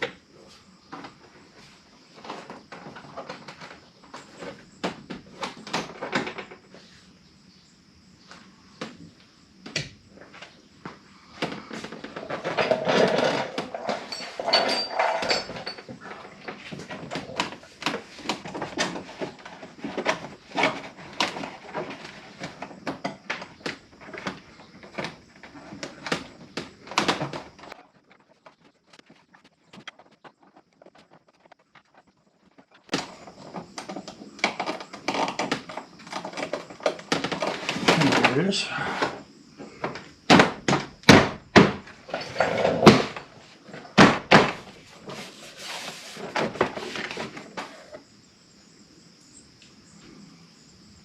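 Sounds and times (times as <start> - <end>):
tools and parts clicking and rattling: 11.4 - 30.1, 32.9 - 39.2, 39.8 - 48.0.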